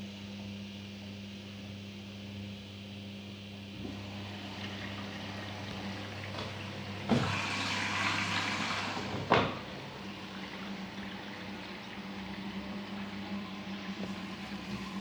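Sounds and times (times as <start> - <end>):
washing machine humming: 3.6 - 15.0
water rushing into drum: 3.8 - 15.0
washing machine clunk: 6.1 - 10.6.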